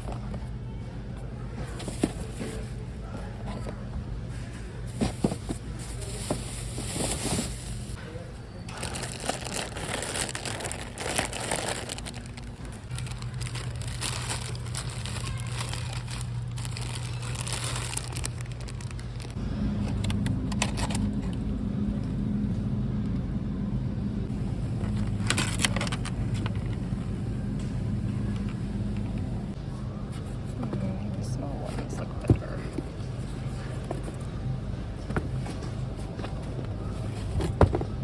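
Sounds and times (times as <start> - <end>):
rustling or crinkling: 1.6 - 2.9, 4.9 - 8.0, 8.7 - 19.4, 24.4 - 26.8
car engine and road noise: 19.2 - 29.6.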